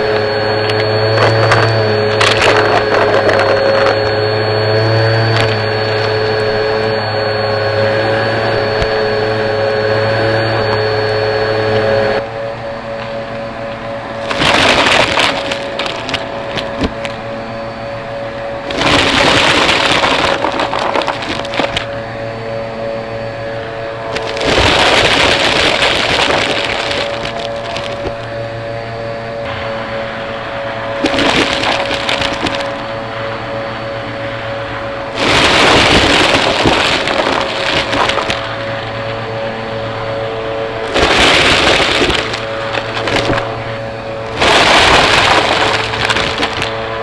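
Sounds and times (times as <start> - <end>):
vacuum cleaner motor hum: 0.0 - 47.0
debris rattling into vacuum nozzle: 0.7 - 6.9, 14.2 - 17.4, 18.4 - 22.2, 24.0 - 28.3, 31.0 - 32.9, 35.1 - 39.2, 40.8 - 47.0.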